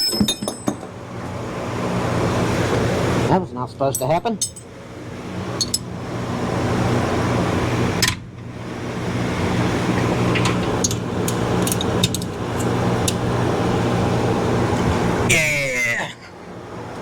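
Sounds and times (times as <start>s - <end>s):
machine humming and whirring: 4.4s - 17.0s.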